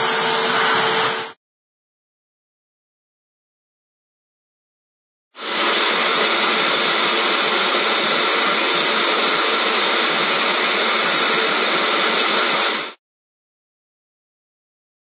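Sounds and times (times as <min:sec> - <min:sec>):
vacuum cleaner running: 0:00.0 - 0:01.4, 0:05.4 - 0:13.0.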